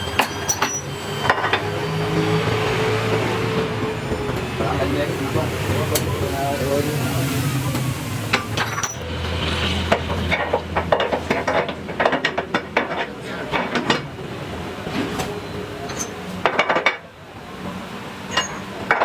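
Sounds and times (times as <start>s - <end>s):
hard objects clinking together: 0.2s - 1.7s.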